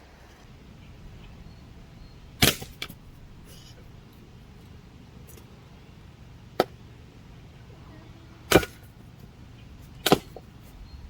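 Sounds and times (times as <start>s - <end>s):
sharp short knocks: 8.5s - 8.9s, 10.0s - 10.5s.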